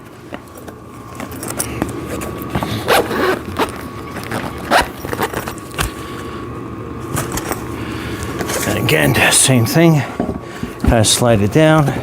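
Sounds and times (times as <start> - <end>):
handling noise: 0.2 - 6.0
zipper rasping: 2.7 - 5.4.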